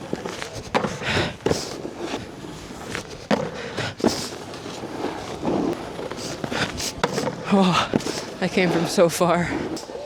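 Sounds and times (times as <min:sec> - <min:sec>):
snowboard scraping on icy snow: 0:00.0 - 0:09.8
snowboard knocks: 0:05.4 - 0:08.3.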